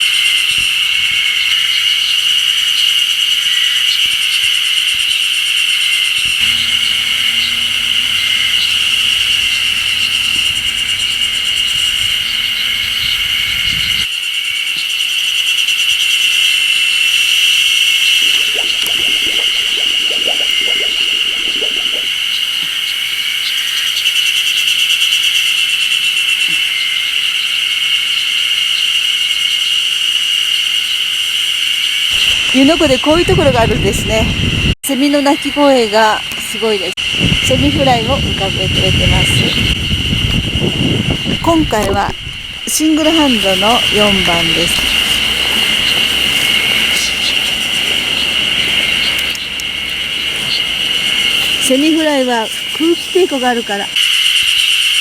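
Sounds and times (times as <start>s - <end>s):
cicadas chorus: 0.0s - 55.0s.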